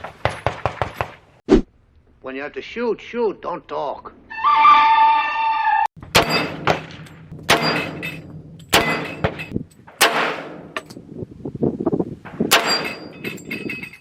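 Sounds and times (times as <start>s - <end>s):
pistol shots: 10.0s - 10.7s.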